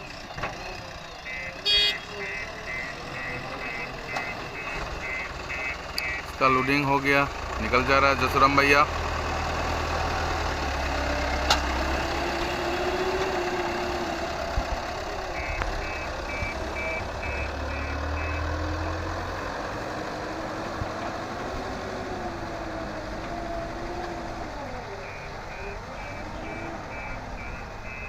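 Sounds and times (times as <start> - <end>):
truck diesel engine: 0.0 - 28.0
reversing alarm beeping: 1.2 - 6.6, 15.3 - 19.2, 25.0 - 28.0.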